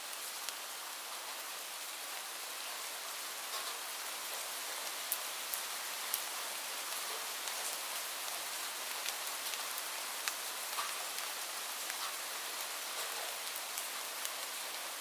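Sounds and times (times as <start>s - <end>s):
light rain falling: 0.0s - 15.0s
raindrops ticking: 8.9s - 14.6s.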